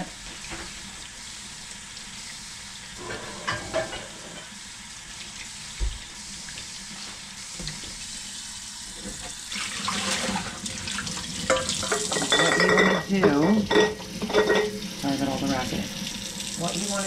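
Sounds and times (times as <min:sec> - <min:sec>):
kitchen tap running: 0:00.0 - 0:17.0
pot clattering: 0:03.0 - 0:04.5, 0:11.5 - 0:14.8.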